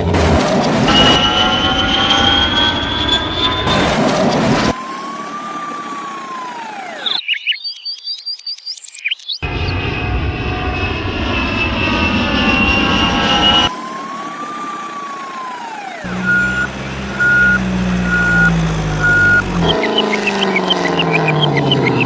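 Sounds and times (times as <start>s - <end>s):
engine running with rising pitch: 0.0s - 7.4s, 9.4s - 22.0s
gliding whistle: 0.8s - 7.3s, 10.6s - 22.0s
reversing beeps: 0.9s - 7.6s, 13.1s - 15.0s, 15.8s - 22.0s
low engine hum: 9.4s - 22.0s.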